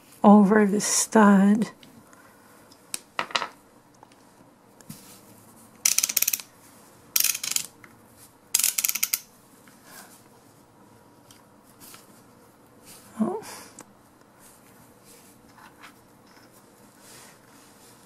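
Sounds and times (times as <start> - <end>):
torque wrench ratchet clicking: 8.6 - 9.2.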